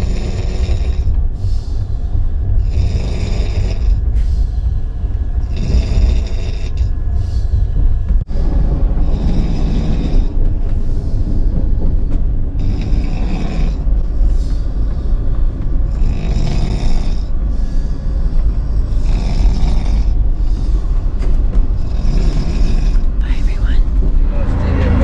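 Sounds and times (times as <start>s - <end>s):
person snoring: 0.0s - 4.8s, 5.4s - 7.7s, 9.0s - 10.4s, 12.6s - 14.4s, 15.9s - 20.9s, 21.8s - 25.0s
train rumbling: 0.0s - 25.0s.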